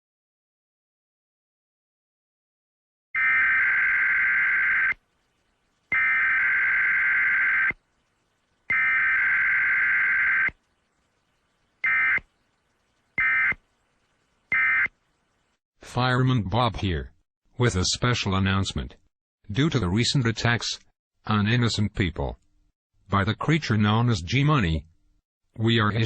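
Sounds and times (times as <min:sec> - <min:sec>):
harsh buzzing digital tones: 0:05.9 - 0:07.8, 0:08.7 - 0:10.5.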